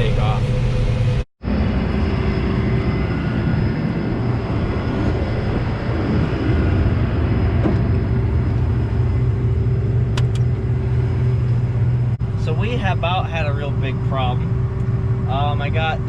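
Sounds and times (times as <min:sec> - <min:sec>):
vehicle engine droning: 0:00.0 - 0:16.0.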